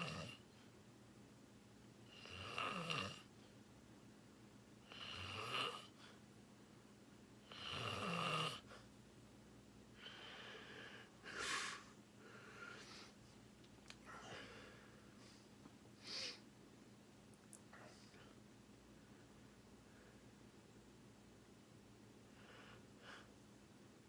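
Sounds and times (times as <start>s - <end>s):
person snoring: 4.9s - 5.9s.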